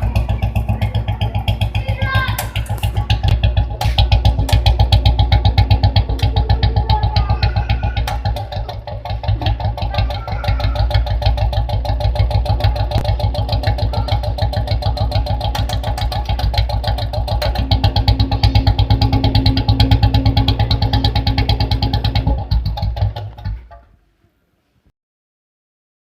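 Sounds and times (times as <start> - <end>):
motorcycle engine idling: 0.0 - 24.0.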